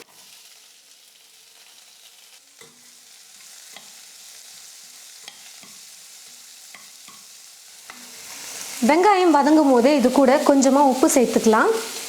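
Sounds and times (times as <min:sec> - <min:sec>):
onions sizzling in hot oil: 0:00.0 - 0:12.0
spoon scraping against pan: 0:02.6 - 0:08.8.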